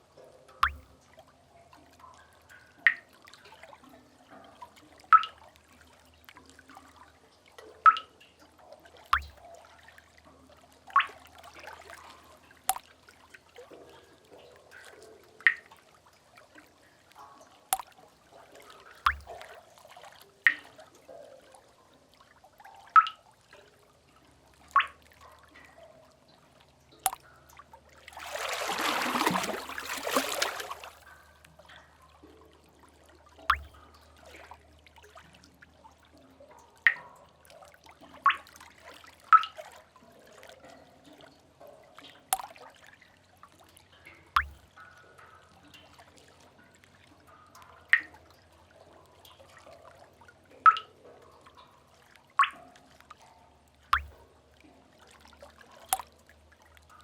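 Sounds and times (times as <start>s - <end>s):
water drips plinking: 0.0s - 57.0s
water splash washing through: 28.2s - 31.0s.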